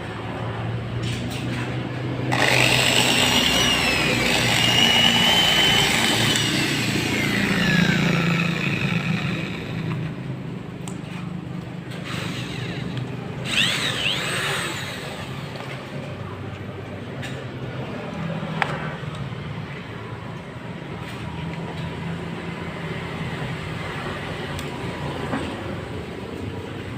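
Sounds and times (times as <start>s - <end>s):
angle grinder whining: 2.3s - 10.3s, 12.0s - 15.7s.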